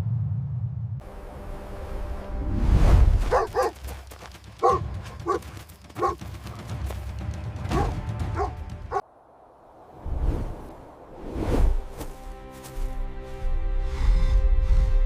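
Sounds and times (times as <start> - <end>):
low rumble: 0.0 - 3.3
background music: 1.0 - 9.0, 11.9 - 15.0
dog barking: 3.3 - 3.8, 4.6 - 6.2, 7.7 - 9.0.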